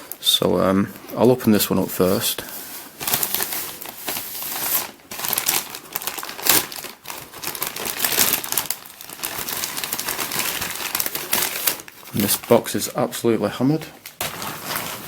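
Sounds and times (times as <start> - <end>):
packaging crinkling and tearing: 2.4 - 12.9, 13.8 - 15.0.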